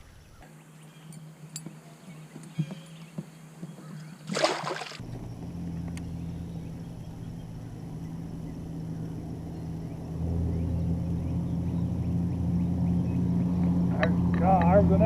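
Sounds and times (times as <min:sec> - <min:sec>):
water splash: 0:04.2 - 0:05.0
steady low rumble: 0:05.0 - 0:15.0.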